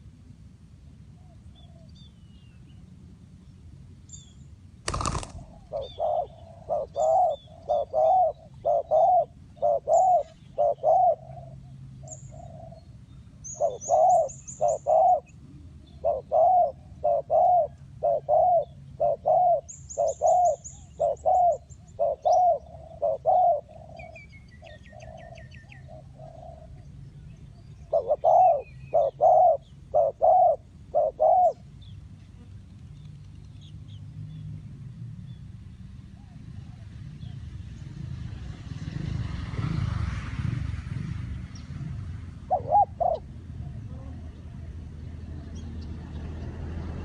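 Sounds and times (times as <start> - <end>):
dove cooing: 4.9 - 12.9, 13.5 - 26.9, 27.8 - 31.7, 42.4 - 44.9.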